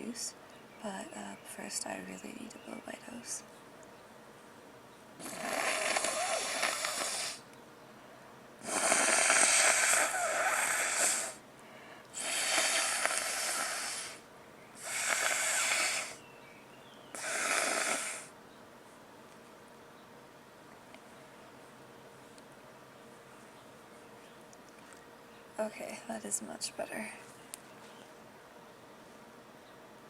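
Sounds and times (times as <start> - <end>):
person blowing their nose: 5.2 - 7.4, 8.6 - 11.4, 12.2 - 14.2, 14.8 - 16.2, 17.2 - 18.3.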